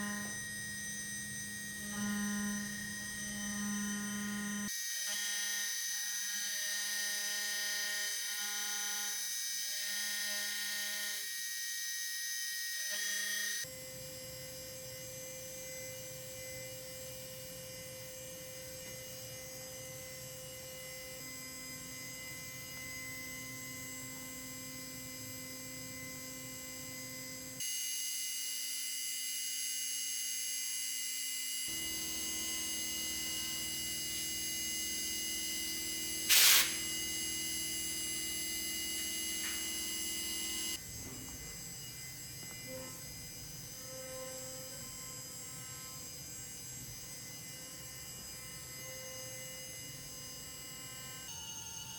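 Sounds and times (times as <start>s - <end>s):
stepper motor tones: 0.0s - 5.3s, 31.7s - 43.2s
high spindle whine: 0.0s - 7.3s, 31.7s - 45.9s.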